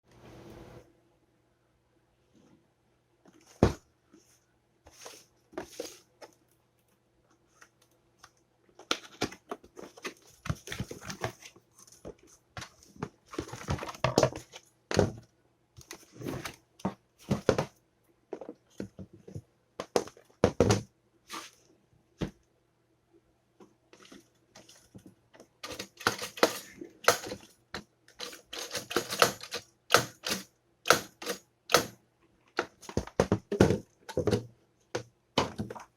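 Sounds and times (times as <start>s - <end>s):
toaster parts clicking and rattling: 25.6s - 27.4s, 28.2s - 30.4s.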